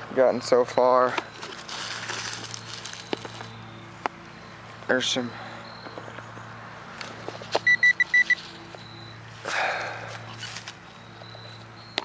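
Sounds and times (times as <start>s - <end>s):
metal detector beeps: 2.4s - 4.6s, 5.4s - 6.1s, 7.6s - 9.2s, 10.9s - 12.0s
brief rustle: 10.2s - 10.8s.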